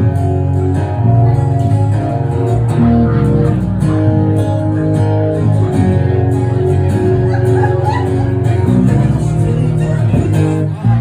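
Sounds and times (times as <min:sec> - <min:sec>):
guitar playing chords: 0:00.0 - 0:11.0.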